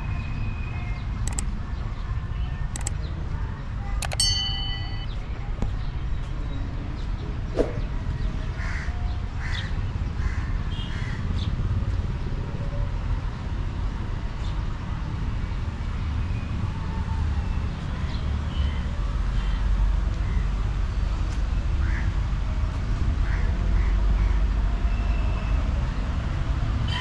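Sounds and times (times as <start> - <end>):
sharp click: 1.2 - 1.5, 2.7 - 3.0, 4.0 - 4.2.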